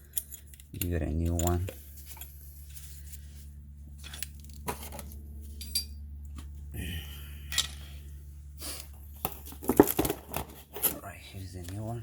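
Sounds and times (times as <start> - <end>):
small metal parts clinking: 0.0 - 2.4, 4.0 - 6.0
steady low hum: 0.0 - 12.0.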